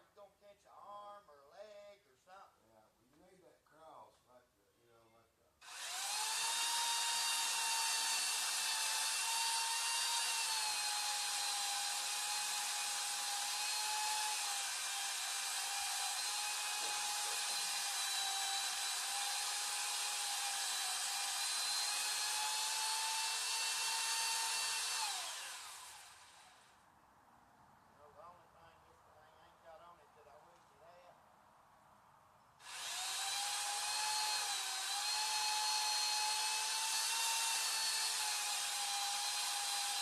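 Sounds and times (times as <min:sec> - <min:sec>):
power tool motor whining: 0:05.6 - 0:26.7, 0:32.6 - 0:40.0.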